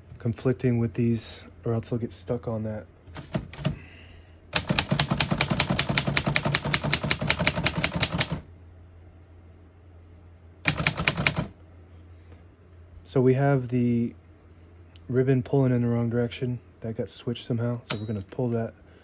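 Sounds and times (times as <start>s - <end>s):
typewriter keys clacking: 3.2s - 3.8s, 4.6s - 8.4s, 10.7s - 11.5s.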